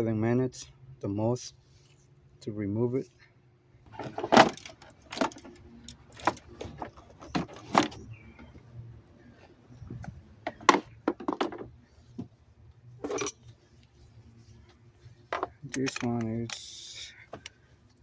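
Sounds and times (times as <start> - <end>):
metal hand tools clinking: 13.0 - 13.5.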